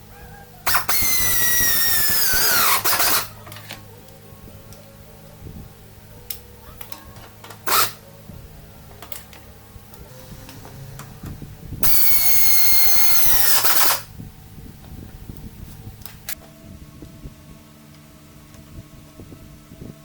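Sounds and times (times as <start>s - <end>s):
power tool running: 0.6s - 3.8s, 7.4s - 8.1s, 9.8s - 14.2s.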